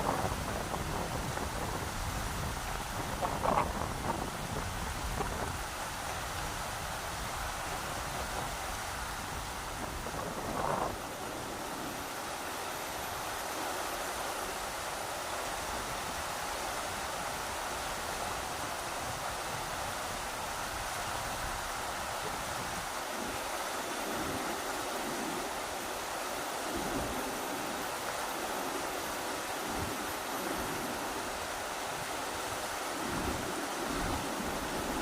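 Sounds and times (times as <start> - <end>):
rushing river water: 0.0 - 35.0
wind gusting on microphone: 0.0 - 35.0.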